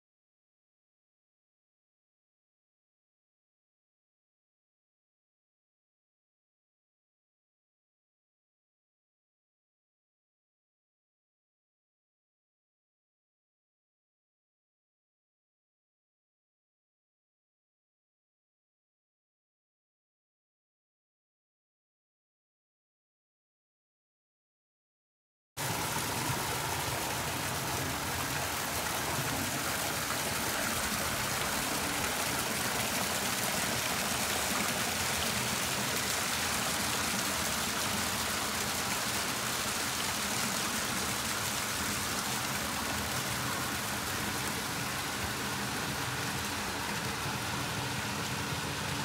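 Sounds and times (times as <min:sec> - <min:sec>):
fountain water splashing: 0:25.6 - 0:49.0.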